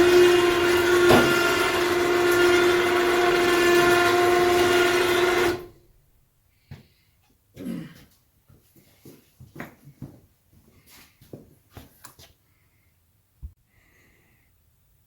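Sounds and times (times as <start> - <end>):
electric winch motor whining: 0.0 - 5.8.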